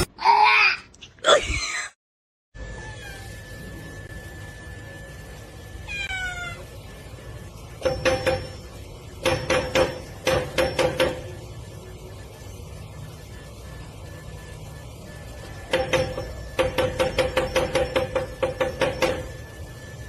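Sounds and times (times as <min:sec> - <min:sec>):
cat meowing: 0:05.9 - 0:06.6.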